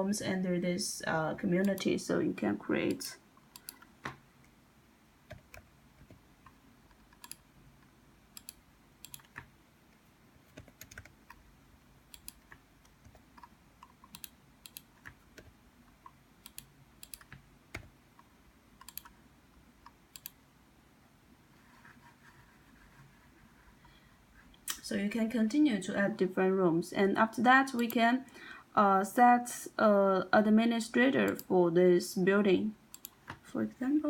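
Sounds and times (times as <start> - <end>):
keyboard typing: 2.9 - 4.5, 5.3 - 7.5, 8.3 - 9.5, 10.4 - 11.4, 12.1 - 17.9, 18.8 - 19.2, 19.8 - 20.4.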